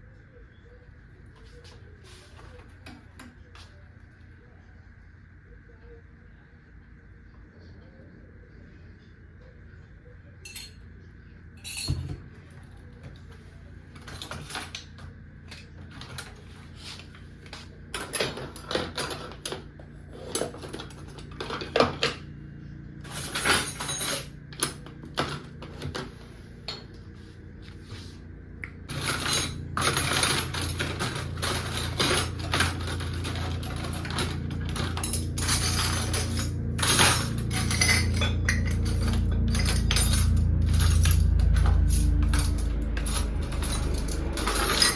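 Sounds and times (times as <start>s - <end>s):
dishes and cutlery clattering: 10.5s - 10.8s, 11.6s - 12.2s, 28.9s - 44.9s.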